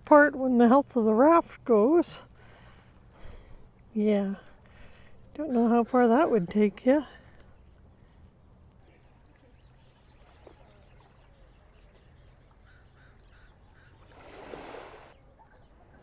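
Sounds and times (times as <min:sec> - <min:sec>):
faint bird calls: 0:07.2 - 0:16.0
small wave washing in: 0:14.1 - 0:15.2.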